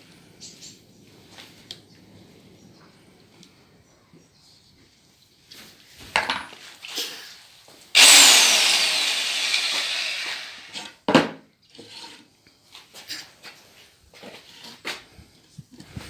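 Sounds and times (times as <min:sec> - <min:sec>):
drill motor spinning down: 0:08.0 - 0:10.8.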